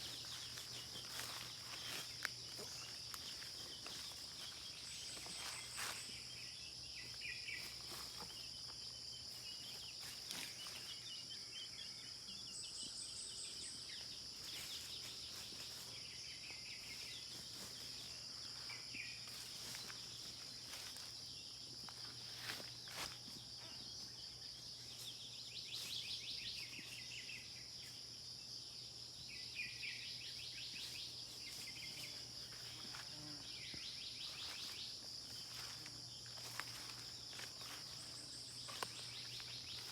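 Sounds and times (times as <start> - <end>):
high-pitched insect drone: 0.0 - 28.0
birds chirping: 29.3 - 39.9.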